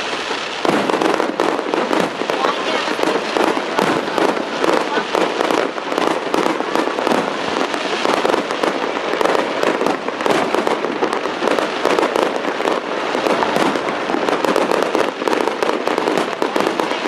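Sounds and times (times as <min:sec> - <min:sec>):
fireworks crackling and banging: 0:00.0 - 0:17.0.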